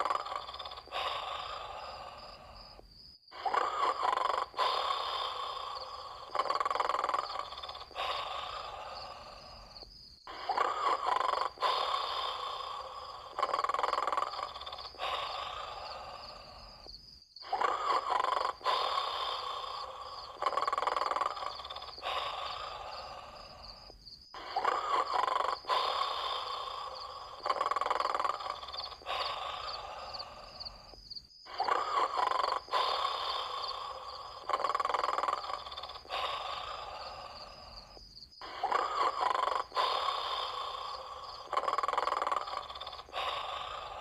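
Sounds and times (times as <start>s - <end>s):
cartoon dog snoring: 0.0s - 44.0s.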